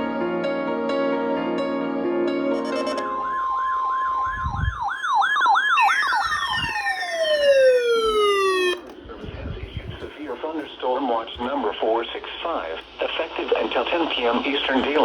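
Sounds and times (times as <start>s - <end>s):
warbling siren tone: 2.7s - 8.9s
steady electronic beep: 2.9s - 5.2s.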